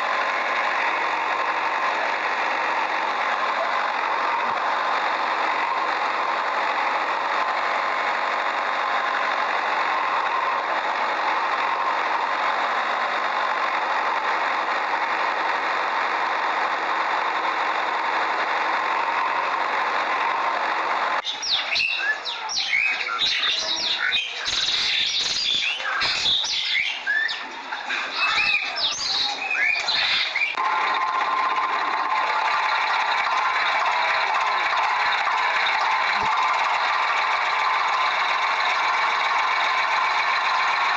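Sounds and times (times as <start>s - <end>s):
birds chirping: 21.2s - 30.6s.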